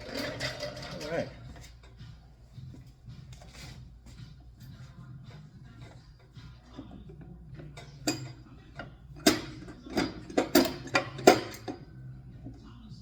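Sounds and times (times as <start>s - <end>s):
metal tools clinking: 0.0s - 2.0s, 5.8s - 12.1s.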